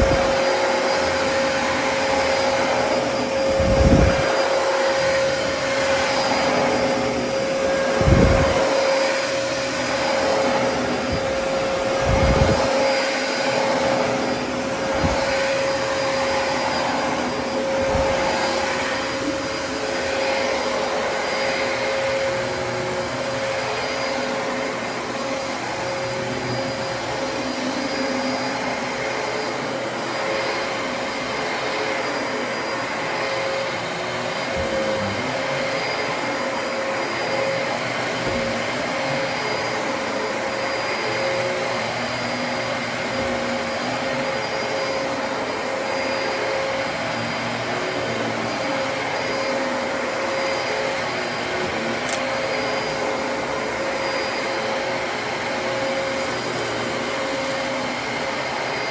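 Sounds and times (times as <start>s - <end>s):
vacuum cleaner running: 0.0s - 58.9s.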